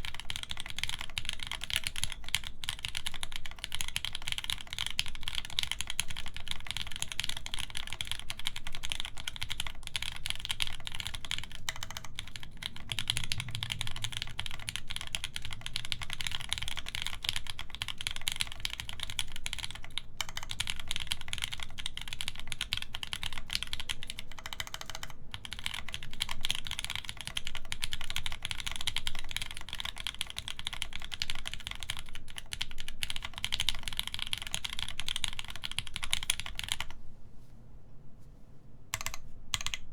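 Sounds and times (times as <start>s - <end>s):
mechanical keyboard typing: 0.0s - 37.0s, 38.9s - 39.9s.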